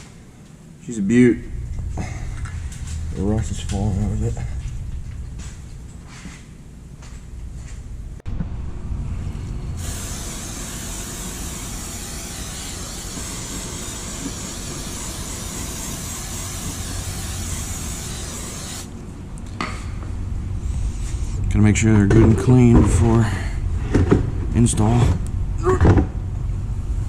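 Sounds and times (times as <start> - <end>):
low rumble: 7.9 - 18.0
spray hiss: 9.8 - 18.9.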